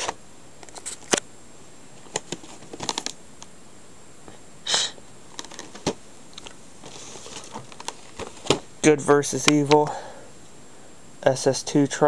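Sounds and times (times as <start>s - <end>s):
short sniff: 4.6s - 5.0s.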